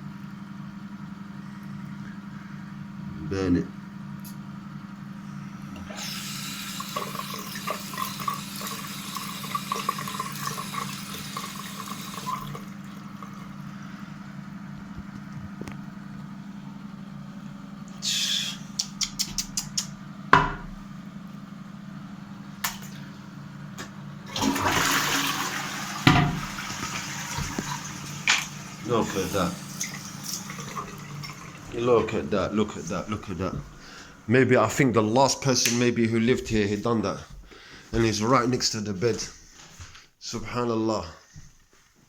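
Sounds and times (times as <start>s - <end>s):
steady low hum: 0.0s - 24.3s, 25.9s - 39.6s
toilet flushing: 5.5s - 15.4s, 22.4s - 34.6s.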